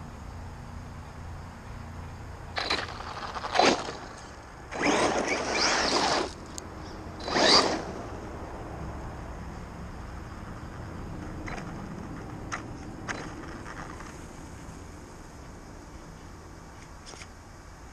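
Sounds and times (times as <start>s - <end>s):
rc car motor whine: 2.6s - 6.6s, 7.2s - 8.0s.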